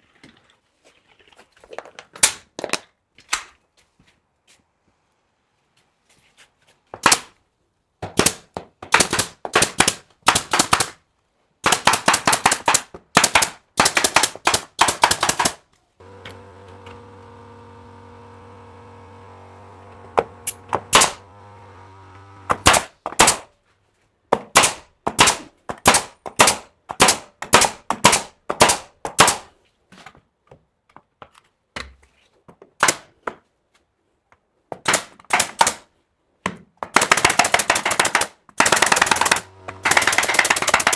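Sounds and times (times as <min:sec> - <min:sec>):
pneumatic nail gun firing: 0:09.0 - 0:10.9, 0:11.7 - 0:23.4, 0:24.6 - 0:29.4, 0:34.9 - 0:35.8, 0:37.0 - 0:40.9
steady mechanical hum: 0:16.0 - 0:22.8, 0:38.8 - 0:40.6.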